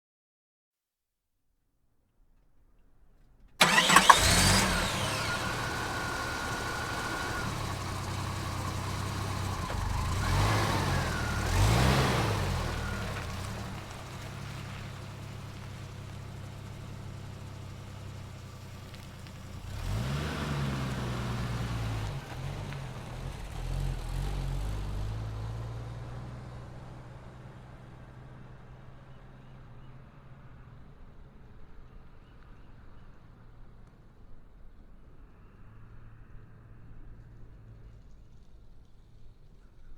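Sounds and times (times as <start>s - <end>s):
car engine starting and revving: 3.6s - 27.2s.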